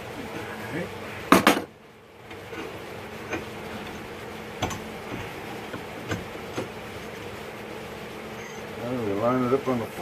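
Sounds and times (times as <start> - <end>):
sharp clicks and knocks: 3.3 - 6.8.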